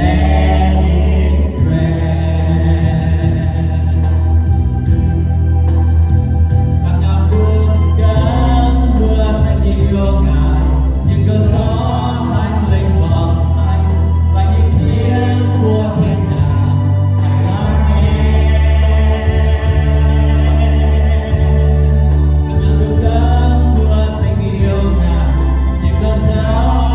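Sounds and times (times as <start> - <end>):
voices singing together: 0.0 - 4.6, 8.0 - 26.9
band with bass and drums: 0.0 - 26.9.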